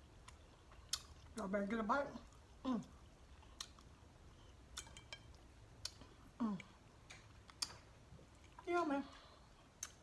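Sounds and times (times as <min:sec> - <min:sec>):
wet mouth clicks and smacks: 0:09.8 - 0:10.0.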